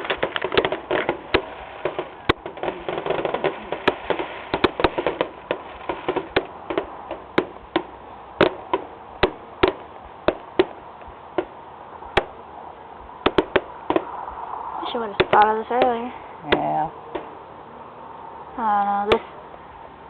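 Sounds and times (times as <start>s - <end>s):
fireworks bangs and pops: 0.0s - 12.4s, 13.2s - 14.2s, 14.8s - 17.4s.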